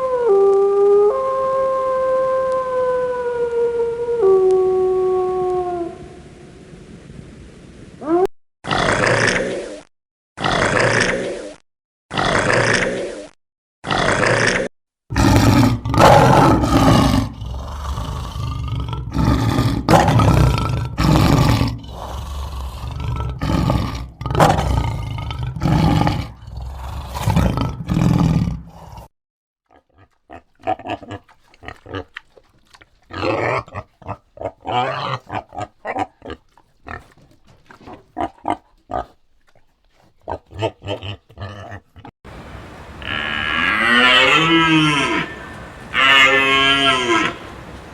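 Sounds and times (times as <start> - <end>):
deep repeated animal calls: 40.9 - 47.9.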